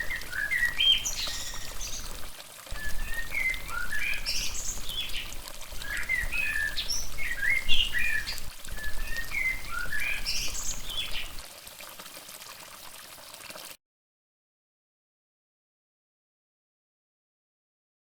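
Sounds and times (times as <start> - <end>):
songbird chirps and whistles: 0.0 - 2.1, 2.7 - 5.2, 5.8 - 11.3.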